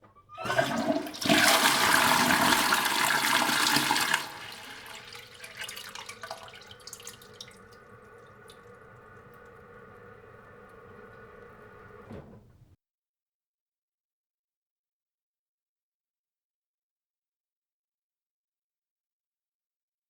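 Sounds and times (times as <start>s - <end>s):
toilet flushing: 0.1s - 12.6s
water gurgling in bowl: 0.4s - 12.0s
cistern refilling hiss: 0.6s - 12.1s.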